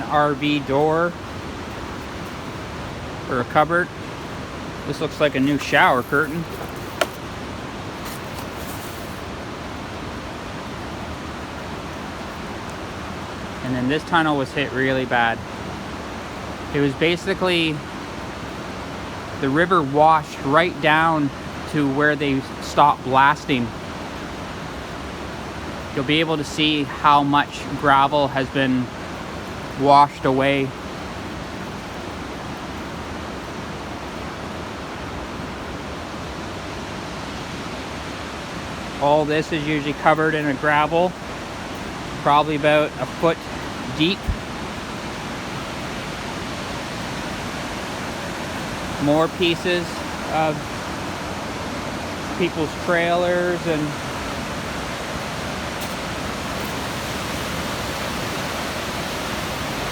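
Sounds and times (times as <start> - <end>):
river water rushing: 0.0 - 13.8, 30.8 - 59.9.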